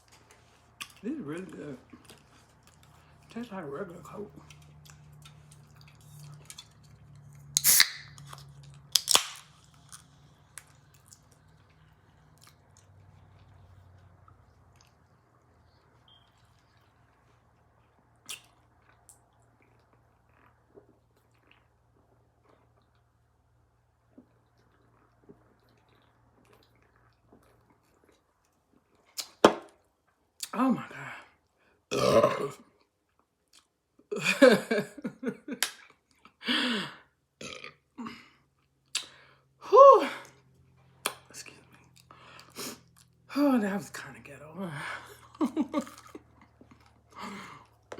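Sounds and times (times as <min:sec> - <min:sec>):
soft chewing: 0:00.0 - 0:30.5, 0:32.6 - 0:33.8, 0:40.2 - 0:43.3, 0:45.0 - 0:47.9
sharp crackling of food: 0:07.4 - 0:13.3
mouth clicks: 0:38.9 - 0:39.2.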